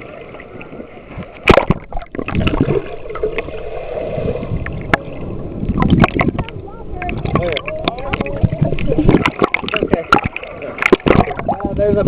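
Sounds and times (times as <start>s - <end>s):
ocean surf sloshing: 0.0s - 12.0s
sharp loud splash: 1.4s - 3.0s, 9.0s - 11.5s.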